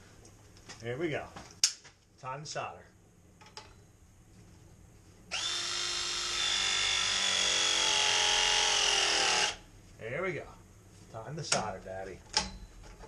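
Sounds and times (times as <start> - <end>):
press tool motor whining: 5.3 - 9.6.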